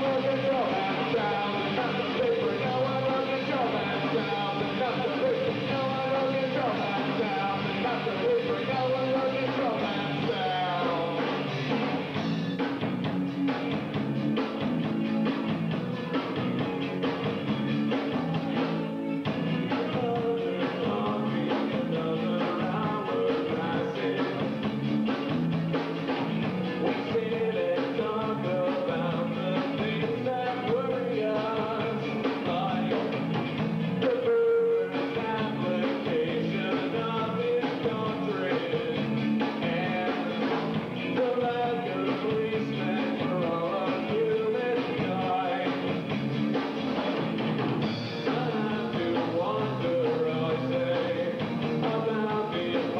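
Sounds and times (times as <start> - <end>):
person singing: 0.0 - 11.6, 19.6 - 24.8, 26.7 - 33.3, 34.0 - 46.1, 48.1 - 52.9
rock band playing live: 0.0 - 52.9.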